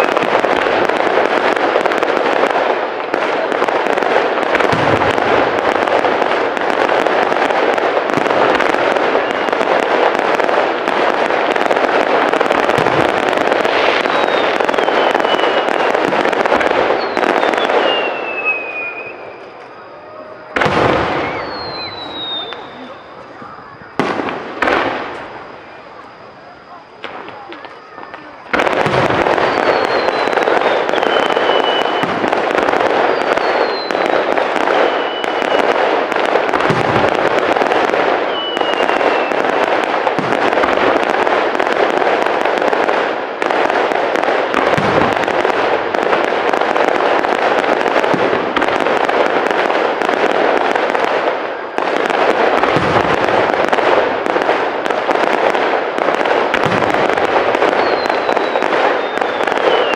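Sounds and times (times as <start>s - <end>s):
deep fireworks booms: 0.0s - 59.9s
fireworks crackling: 0.0s - 59.9s
high falling whistles: 12.6s - 32.3s, 33.0s - 35.7s, 38.2s - 39.6s, 57.6s - 59.9s.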